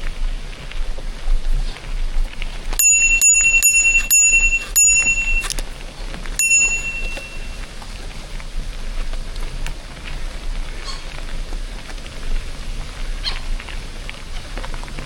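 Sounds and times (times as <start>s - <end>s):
bicycle bell ringing: 2.8s - 5.6s, 6.4s - 7.7s.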